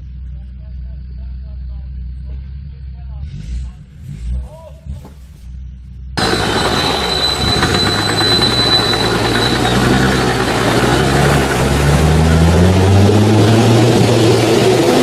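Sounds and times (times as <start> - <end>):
off-road engine running hard: 6.1 - 15.0
thin high whine: 6.2 - 11.5.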